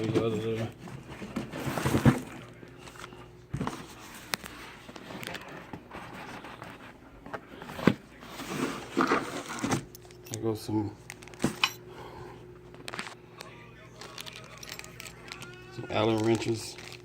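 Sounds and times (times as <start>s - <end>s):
packaging rustling: 14.0s - 17.0s.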